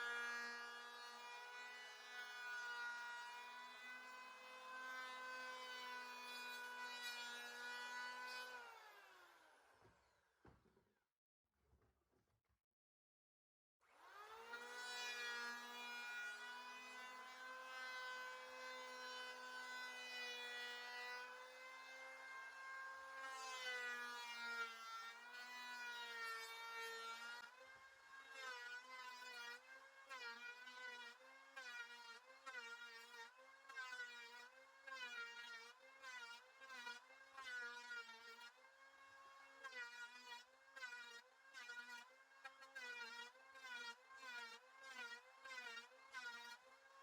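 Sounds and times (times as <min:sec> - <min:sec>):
electric hand planer whining: 0:00.0 - 0:09.8, 0:13.9 - 0:27.4.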